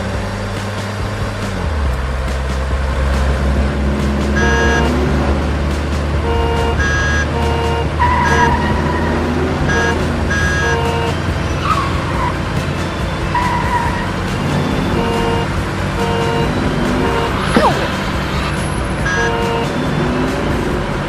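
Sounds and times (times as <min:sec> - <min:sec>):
vehicle engine rumble: 0:00.0 - 0:21.0
cartoon music of repeated notes: 0:04.3 - 0:05.4, 0:06.0 - 0:20.6.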